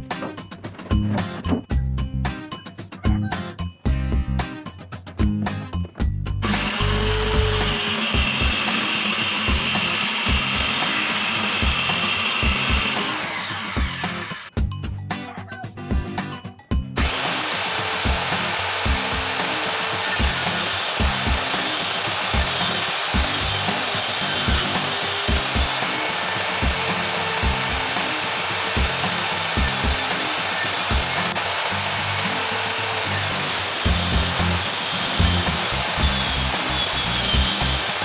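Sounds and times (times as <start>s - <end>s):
funk music with steady beat: 0.0s - 8.6s, 13.8s - 17.1s, 28.8s - 30.1s, 33.8s - 34.6s
electric power tool whining: 6.4s - 14.6s, 17.0s - 38.0s.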